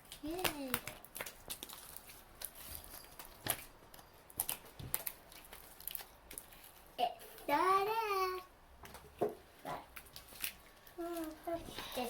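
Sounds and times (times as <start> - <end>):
slime squishing: 0.0 - 7.0.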